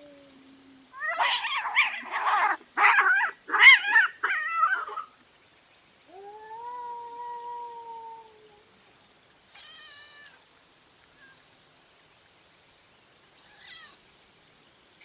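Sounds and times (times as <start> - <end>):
cats yowling and screeching: 0.0 - 5.0, 6.1 - 8.6, 9.5 - 11.4, 13.4 - 14.0.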